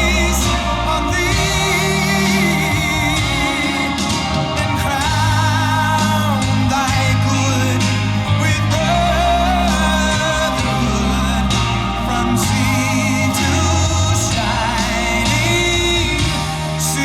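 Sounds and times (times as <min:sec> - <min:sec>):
song with singing voice: 0:00.0 - 0:17.0.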